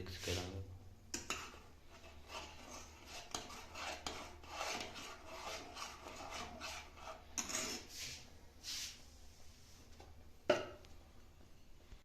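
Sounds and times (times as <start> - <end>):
spoon stirring and scraping vessel: 1.1 - 9.0.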